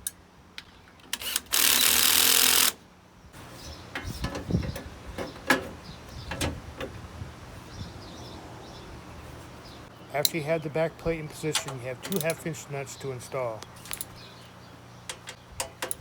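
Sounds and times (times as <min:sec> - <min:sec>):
power drill driving bolt: 0:01.0 - 0:02.8
metal parts clicking and knocking: 0:11.5 - 0:12.4, 0:15.1 - 0:16.0.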